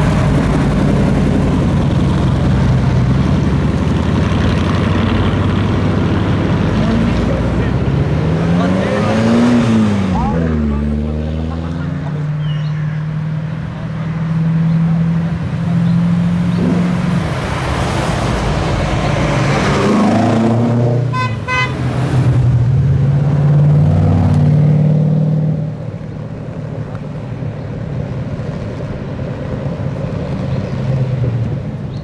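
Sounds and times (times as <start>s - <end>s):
cars driving past revving: 0.0s - 32.0s
short car horn toots: 21.1s - 21.8s.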